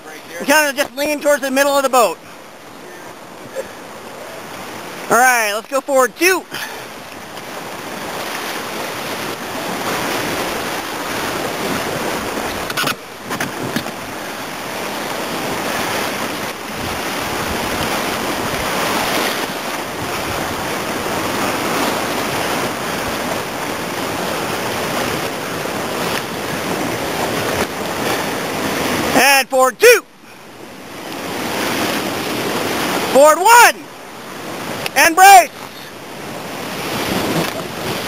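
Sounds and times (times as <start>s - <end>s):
rushing whitewater roar: 0.0s - 38.0s
wind buffeting microphone: 6.8s - 29.1s
sharp knocks or splashes: 12.5s - 14.0s.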